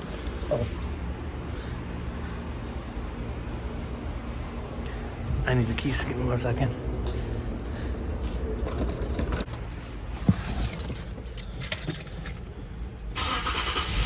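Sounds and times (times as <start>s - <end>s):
car steady hum: 0.0s - 14.0s
car keys jangling: 10.5s - 12.5s.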